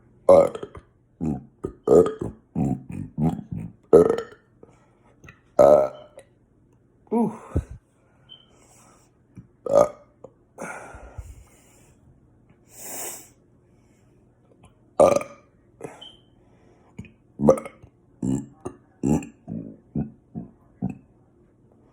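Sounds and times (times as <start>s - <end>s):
person burping: 0.3s - 4.5s, 5.6s - 6.2s, 7.1s - 7.8s, 9.6s - 10.9s, 15.0s - 16.1s, 17.4s - 21.0s.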